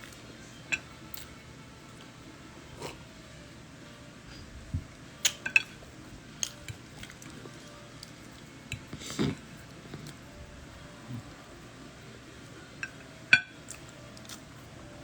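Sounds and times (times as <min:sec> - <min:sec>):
chewing: 0:00.0 - 0:03.1, 0:04.3 - 0:11.4, 0:12.6 - 0:14.7
cutlery clicking against a dish: 0:05.2 - 0:05.8.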